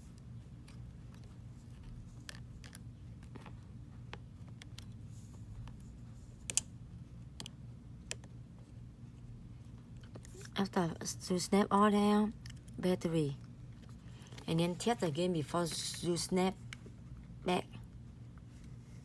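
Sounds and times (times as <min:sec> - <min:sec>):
steady low hum: 0:00.0 - 0:19.0
small connector clicks: 0:06.4 - 0:06.7.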